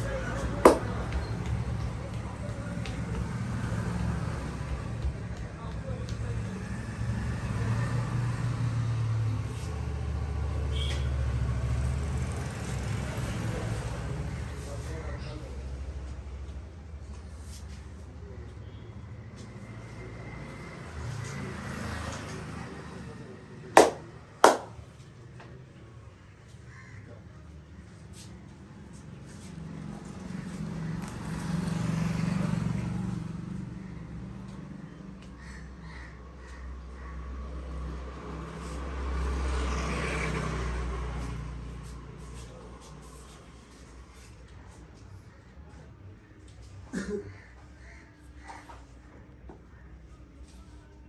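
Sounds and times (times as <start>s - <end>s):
vehicle passing by: 0.0s - 15.9s, 29.2s - 44.3s
hands slapping skin: 0.6s - 3.7s, 23.8s - 24.8s.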